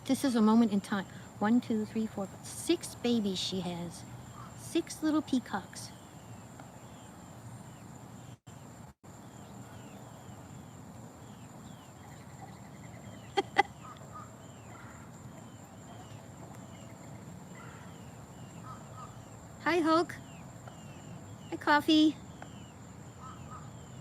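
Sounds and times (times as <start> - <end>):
peachicks peeping: 0.0 - 24.0.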